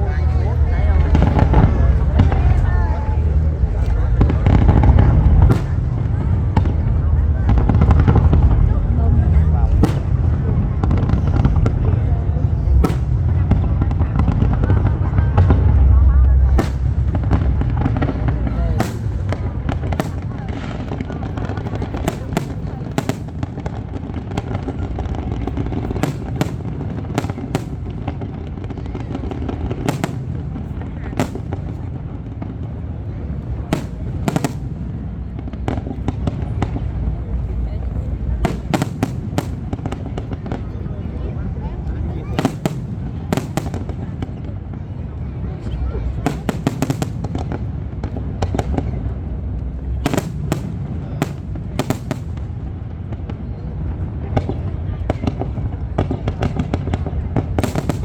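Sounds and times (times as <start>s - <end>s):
low rumble: 0.0s - 22.5s
fireworks bangs: 0.0s - 58.0s
fireworks pops: 3.8s - 6.8s, 9.8s - 11.8s, 12.7s - 15.6s, 16.4s - 32.5s, 33.6s - 37.7s, 38.3s - 40.8s, 42.3s - 44.6s, 49.6s - 52.6s, 54.3s - 58.0s.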